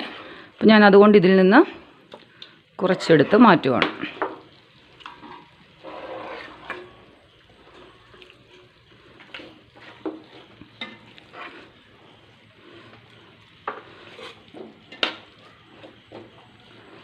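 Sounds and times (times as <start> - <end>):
faint sizzle from pan: 0.0 - 17.0
metal spoon scraping a pot: 2.9 - 11.9, 12.7 - 15.3.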